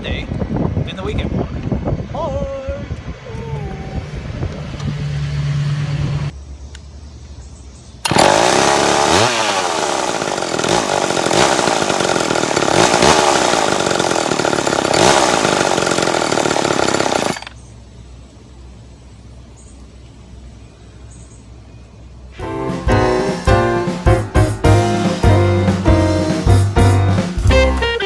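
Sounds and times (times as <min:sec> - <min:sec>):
chainsaw revving: 0:08.0 - 0:17.6.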